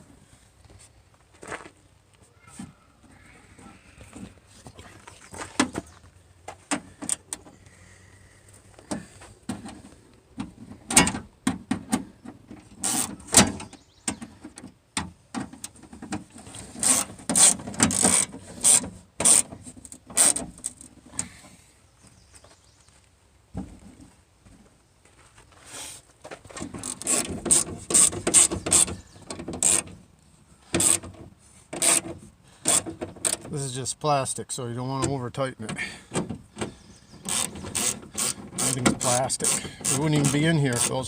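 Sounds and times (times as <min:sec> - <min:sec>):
door latch parts clicking and scraping: 0:15.4 - 0:21.4, 0:26.5 - 0:30.0, 0:30.6 - 0:33.6, 0:35.0 - 0:41.0.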